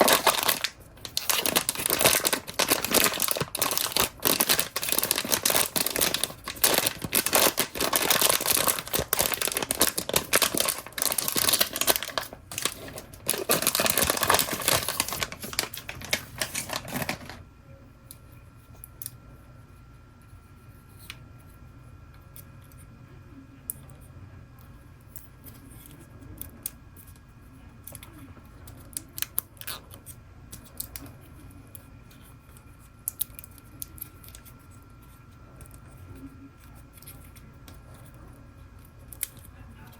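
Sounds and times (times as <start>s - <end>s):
toy packaging tearing and crinkling: 0.0s - 17.4s.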